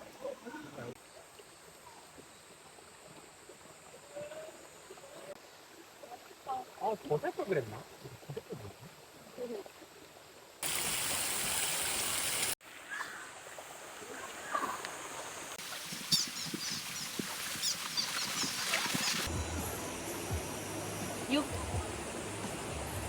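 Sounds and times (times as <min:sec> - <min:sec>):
stream water rushing: 0:09.0 - 0:23.0.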